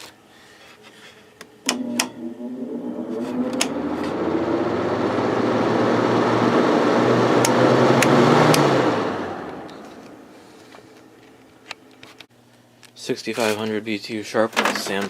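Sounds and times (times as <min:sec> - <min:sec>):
electrical hum: 0:01.5 - 0:12.8
fan motor whine: 0:01.6 - 0:12.2.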